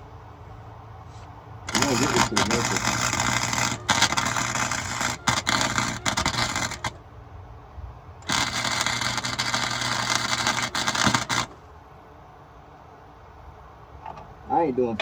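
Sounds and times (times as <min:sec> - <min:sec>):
arc welder crackling: 0:01.6 - 0:07.1, 0:08.2 - 0:11.7.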